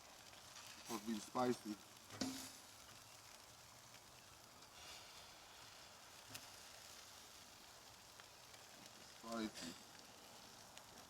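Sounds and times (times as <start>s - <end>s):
meat sizzling on a grill: 0.0s - 11.0s.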